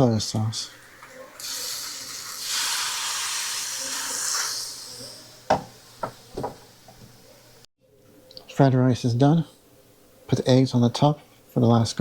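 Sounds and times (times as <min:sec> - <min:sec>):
sauce sizzling in a wok: 0:00.8 - 0:06.1.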